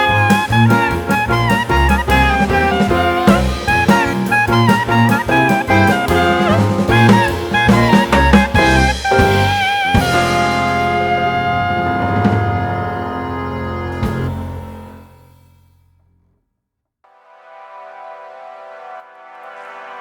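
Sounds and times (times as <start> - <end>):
drum kit: 0.0 - 15.4
brass melody: 0.0 - 15.7, 17.1 - 20.0.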